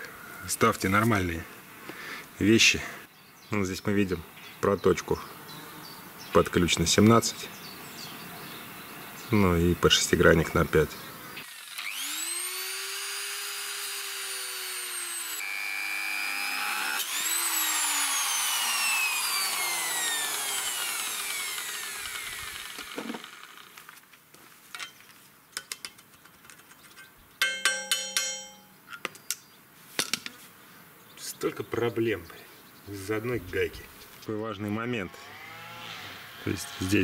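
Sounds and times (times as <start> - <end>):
angle grinder whining: 11.4 - 24.0, 35.0 - 37.0.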